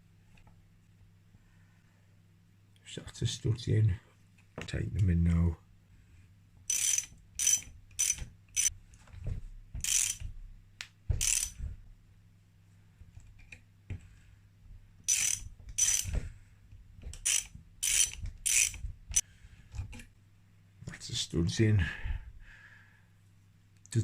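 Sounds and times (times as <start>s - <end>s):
ratchet wrench clicking: 6.7s - 8.7s, 9.8s - 10.3s, 11.2s - 11.6s, 15.1s - 16.1s, 17.2s - 19.2s.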